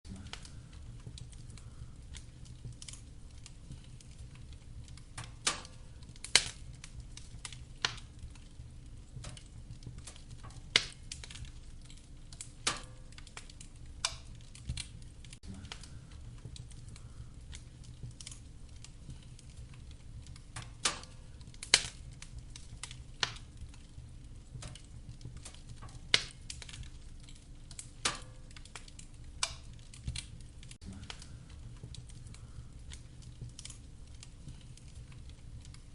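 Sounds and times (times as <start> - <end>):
low steady rumble: 0.1 - 10.5
wood fire crackling: 0.1 - 35.9.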